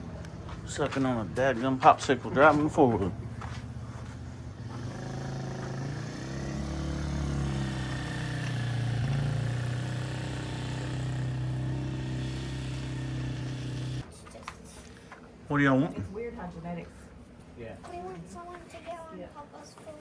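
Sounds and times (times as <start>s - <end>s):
small engine running: 3.4s - 14.0s.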